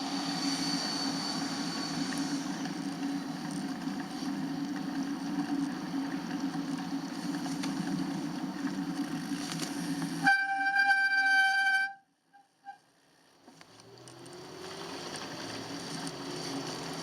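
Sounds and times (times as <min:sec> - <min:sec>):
loud horn-like tone: 0:10.2 - 0:12.8.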